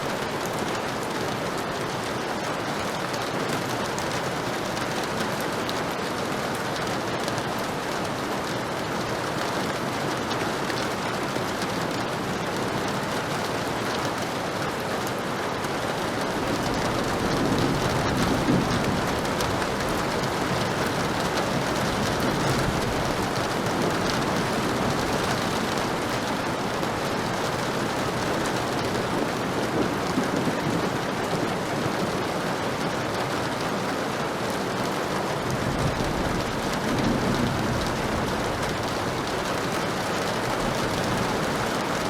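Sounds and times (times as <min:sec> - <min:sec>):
heavy rain falling: 0:00.0 - 0:42.0
low rumble of thunder: 0:16.4 - 0:26.1, 0:35.5 - 0:39.5.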